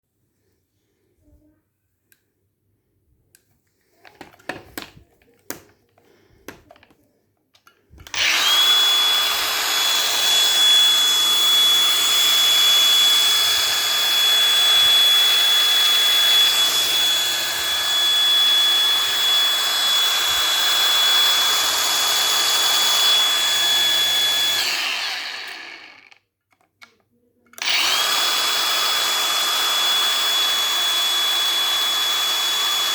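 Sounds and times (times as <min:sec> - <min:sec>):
angle grinder motor whine: 0:08.1 - 0:26.2, 0:27.6 - 0:32.9.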